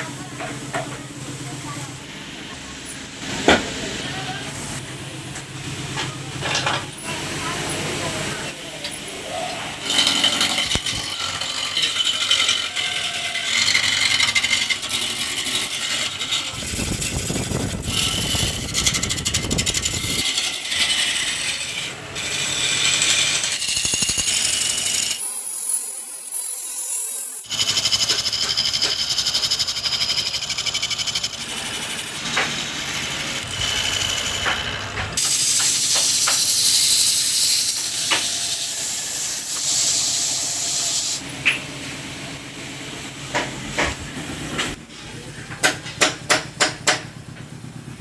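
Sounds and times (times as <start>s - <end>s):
woodworking tool on wood: 8.3s - 41.6s.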